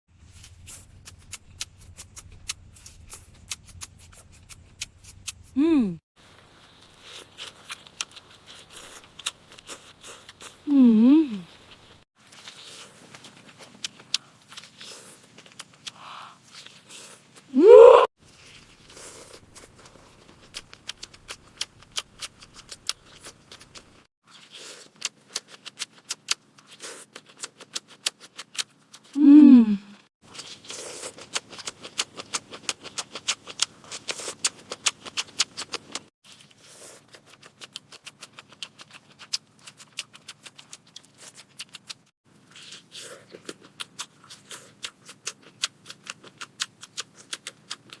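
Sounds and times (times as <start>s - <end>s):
crunchy chewing: 0.3s - 5.5s, 6.4s - 10.7s, 11.4s - 17.5s, 18.3s - 29.2s, 30.3s - 48.0s
person moaning: 5.6s - 6.0s, 10.7s - 11.4s, 17.5s - 18.1s, 29.2s - 30.0s.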